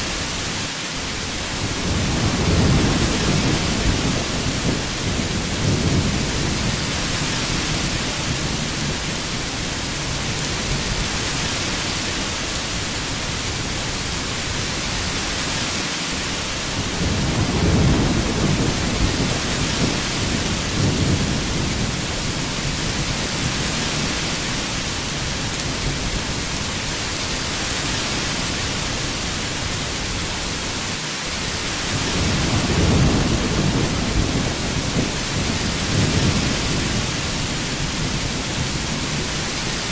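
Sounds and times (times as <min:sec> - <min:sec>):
heavy rain hissing: 0:00.0 - 0:39.9
rolls of thunder: 0:32.0 - 0:37.1.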